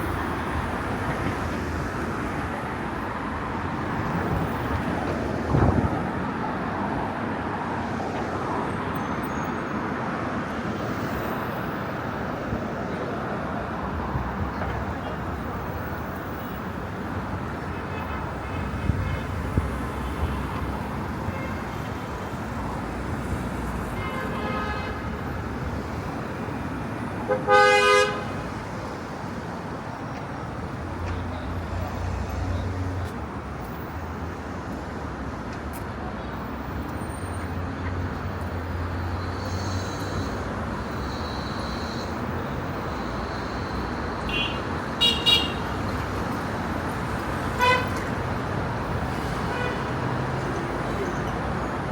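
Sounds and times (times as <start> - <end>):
city street traffic: 0.0 - 51.9
vehicle horns honking: 17.7 - 20.5, 24.0 - 25.2, 27.3 - 28.4, 39.4 - 45.8, 47.5 - 48.1, 49.5 - 49.9.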